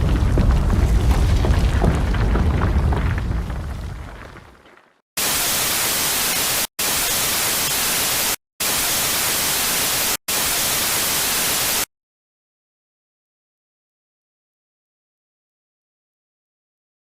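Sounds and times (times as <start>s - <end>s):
deep rumble: 0.0s - 4.6s
white-noise static bursts: 5.2s - 11.9s.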